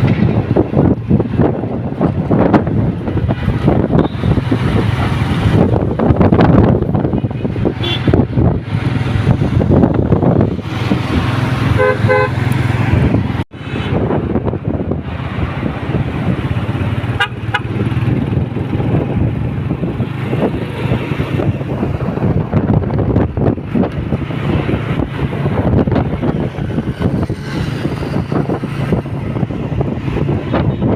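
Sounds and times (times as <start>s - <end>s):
strong wind buffeting microphone: 0.0s - 30.9s
vehicle horn honking: 7.8s - 8.2s, 11.8s - 12.4s, 17.2s - 17.8s.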